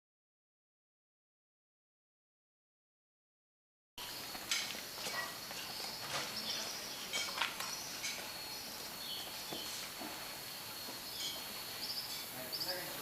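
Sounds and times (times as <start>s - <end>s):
high thin insect drone: 4.0s - 13.0s.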